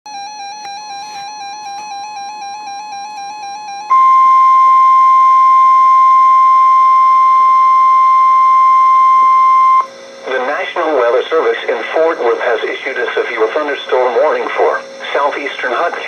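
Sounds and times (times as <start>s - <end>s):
warbling electronic tone: 0.1s - 9.9s
loud steady alarm tone: 0.1s - 16.0s.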